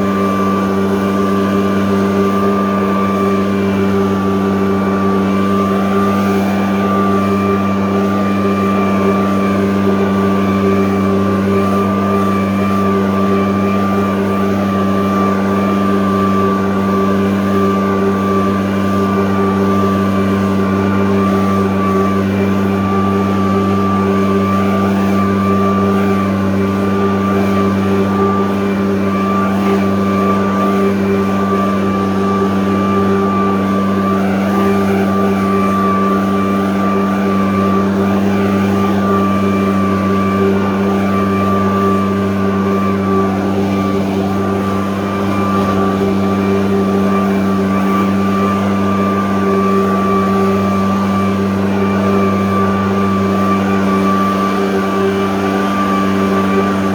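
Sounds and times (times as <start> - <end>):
blower engine hum: 0.0 - 56.9
thin steady whine: 0.0 - 56.9.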